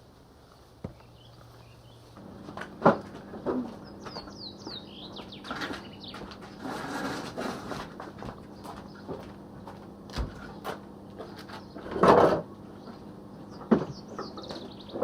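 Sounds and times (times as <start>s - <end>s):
clattering scrape: 5.5s - 8.1s.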